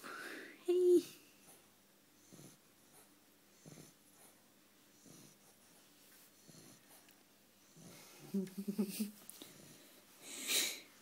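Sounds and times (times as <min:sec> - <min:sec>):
dog snoring faintly: 0:01.0 - 0:08.4, 0:09.4 - 0:10.0.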